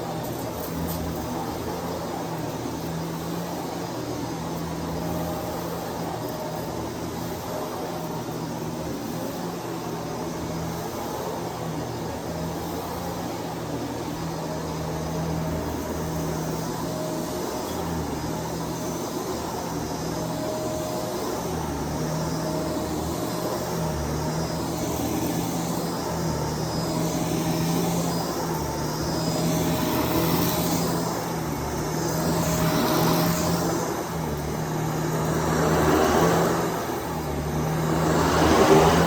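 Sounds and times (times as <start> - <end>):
vacuum cleaner running: 0.0 - 39.0.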